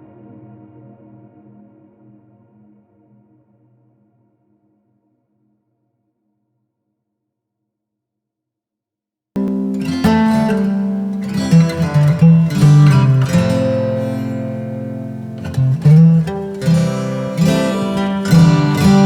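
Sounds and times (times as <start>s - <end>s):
acoustic guitar music: 9.4s - 19.0s.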